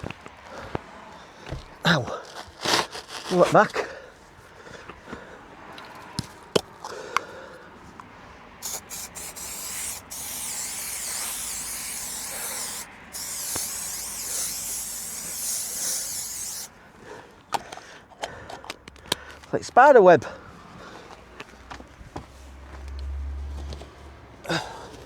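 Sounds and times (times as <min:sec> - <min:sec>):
rustling: 0:00.0 - 0:03.9
aerosol can spraying: 0:08.6 - 0:16.7.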